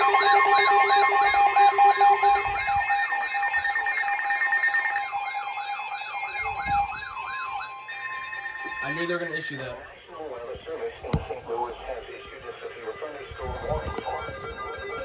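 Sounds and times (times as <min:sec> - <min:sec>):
steady alert tones: 0:00.0 - 0:10.0
warbling siren alarms: 0:00.0 - 0:15.0.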